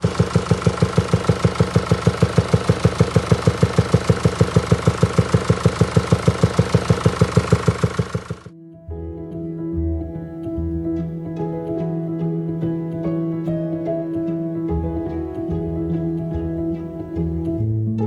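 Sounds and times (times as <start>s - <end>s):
car engine idling with knocking: 0.0s - 8.5s.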